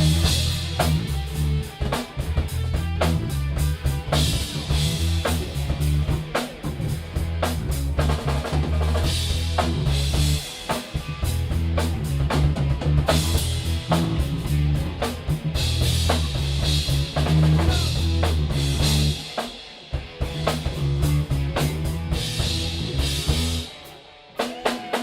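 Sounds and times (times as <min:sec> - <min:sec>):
bass drum and snare hits: 0:00.0 - 0:19.3
bass guitar low notes: 0:00.0 - 0:19.3, 0:20.0 - 0:23.7
live rock band playing: 0:00.0 - 0:25.0.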